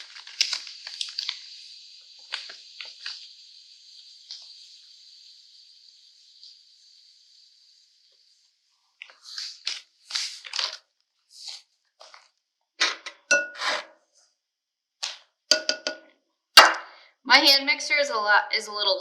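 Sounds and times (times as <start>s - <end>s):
scrapes and rustles at a bowl: 8.8s - 12.4s.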